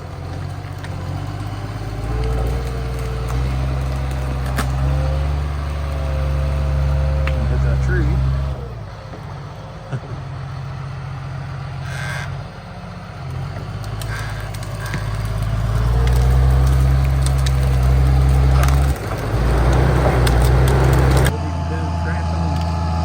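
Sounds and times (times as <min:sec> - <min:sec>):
diesel engine working under load: 0:00.0 - 0:23.0
cracks and knocks of wood: 0:00.1 - 0:07.5, 0:13.2 - 0:21.3.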